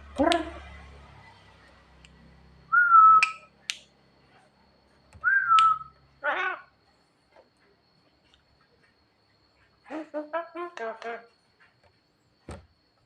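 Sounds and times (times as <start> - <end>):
bird whistling notes: 2.7 - 3.5, 5.2 - 5.9.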